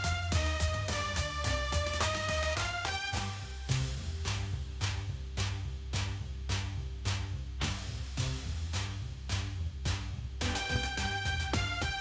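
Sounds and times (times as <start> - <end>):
drum beat: 0.0 - 4.0, 9.9 - 12.0
bass line: 0.0 - 12.0.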